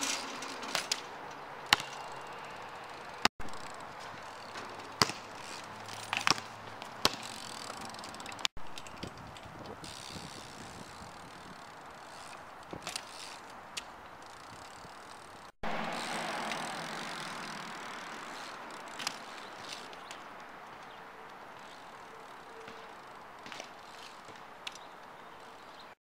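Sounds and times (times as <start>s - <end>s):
bike tyres rolling: 0.0s - 26.0s
wind noise: 8.6s - 11.9s.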